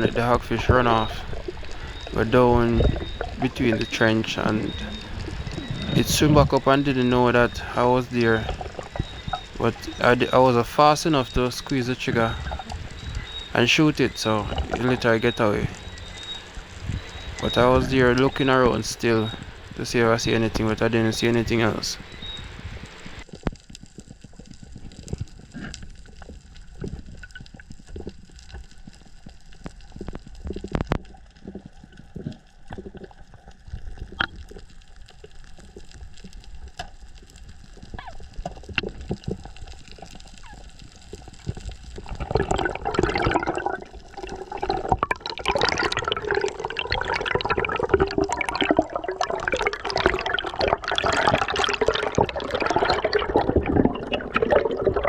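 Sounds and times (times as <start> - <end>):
rushing bubbling water: 0.0 - 23.3, 37.2 - 55.0
underwater clicks and pops: 41.1 - 55.0.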